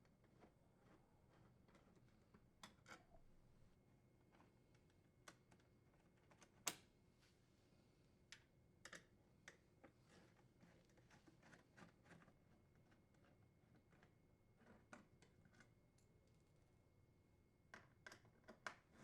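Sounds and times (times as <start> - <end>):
faint clicks of screwdriver and screws: 8.3 - 16.4.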